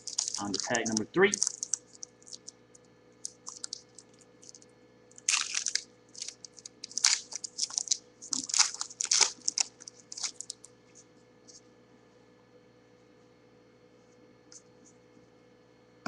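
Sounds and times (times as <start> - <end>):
card pack wrapper crinkling: 0.0 - 2.6, 3.2 - 10.7.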